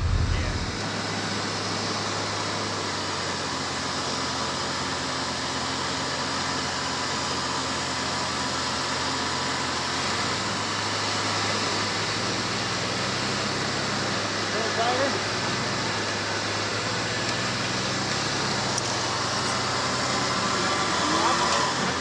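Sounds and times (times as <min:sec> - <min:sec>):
car engine running: 0:00.0 - 0:00.9.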